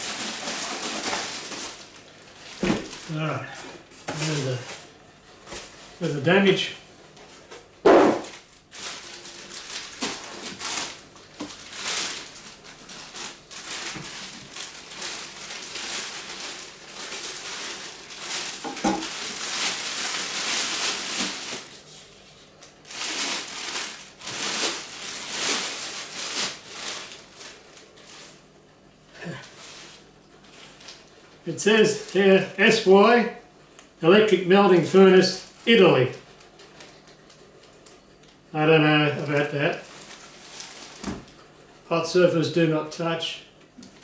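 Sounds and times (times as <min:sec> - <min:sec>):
plastic and foam crinkling: 0:00.0 - 0:28.6, 0:29.2 - 0:44.0.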